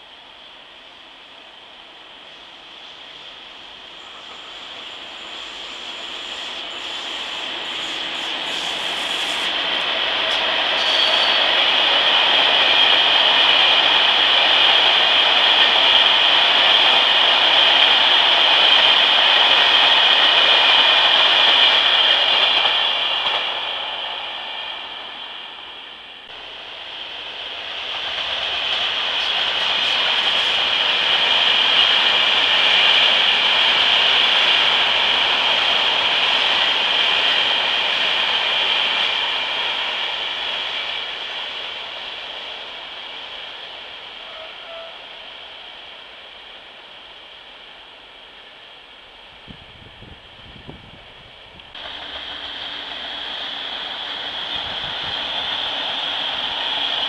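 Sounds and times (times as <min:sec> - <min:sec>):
train rushing past on rails: 0:00.0 - 0:57.0.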